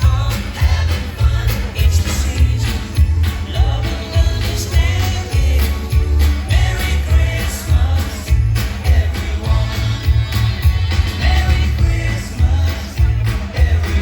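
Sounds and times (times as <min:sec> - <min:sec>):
heavy bass beat: 0:00.0 - 0:14.0
upbeat pop song with singing: 0:00.0 - 0:14.0.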